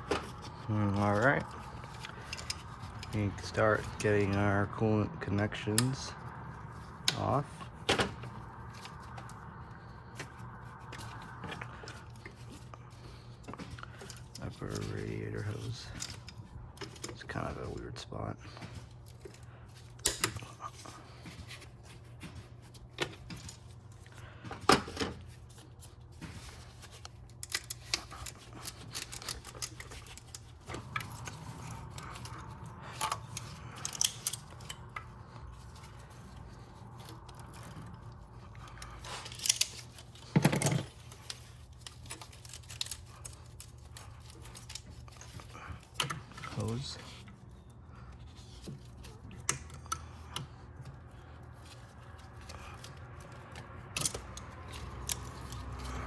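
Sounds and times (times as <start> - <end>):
faint steady hum: 0.0 - 56.0
hand tools on metal: 26.2 - 47.4.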